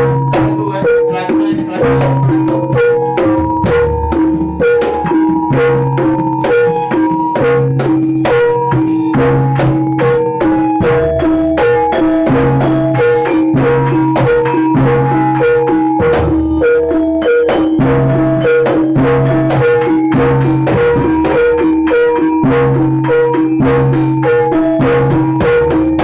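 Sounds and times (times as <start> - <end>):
drum strokes: 0.0 - 26.0
gamelan ensemble music: 0.0 - 26.0
ringing metal percussion: 0.0 - 26.0.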